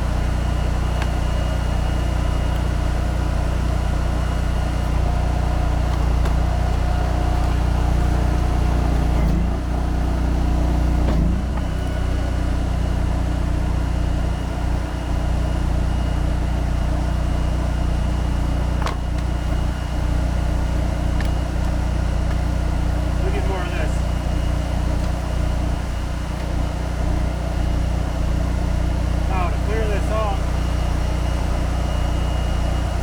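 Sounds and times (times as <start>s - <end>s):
engine running steadily: 0.0s - 33.0s.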